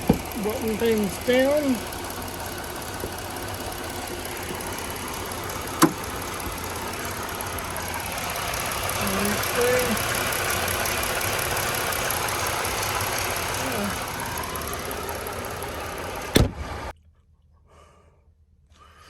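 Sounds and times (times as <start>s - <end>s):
steady rushing vehicle noise: 0.0s - 17.0s.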